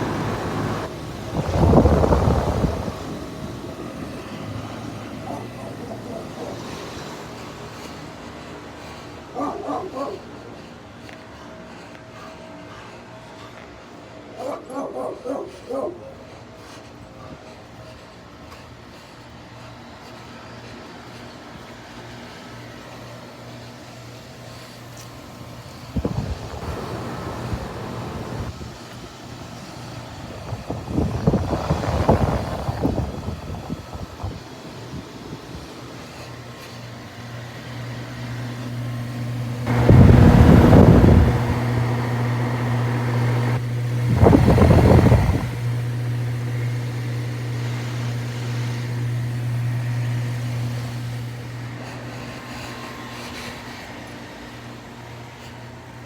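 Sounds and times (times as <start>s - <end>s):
air conditioner humming: 0.0s - 10.6s, 24.0s - 53.7s.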